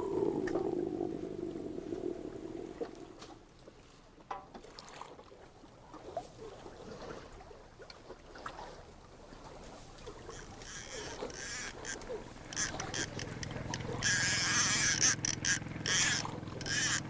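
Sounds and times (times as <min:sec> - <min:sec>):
water lapping around a boat: 0:00.0 - 0:17.0.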